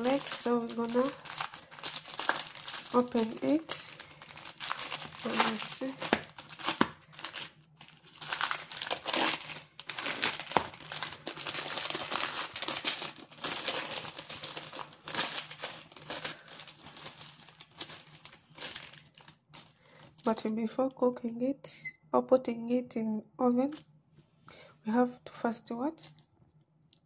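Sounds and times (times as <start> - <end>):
plastic packaging crinkling: 0.0 - 20.5.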